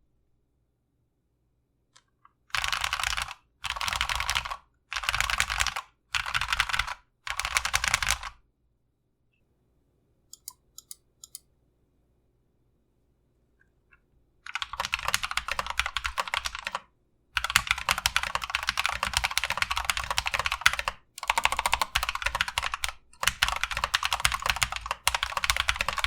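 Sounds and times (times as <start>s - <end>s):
mechanical keyboard typing: 2.5s - 8.3s, 10.4s - 11.4s, 14.5s - 16.8s, 17.4s - 26.0s.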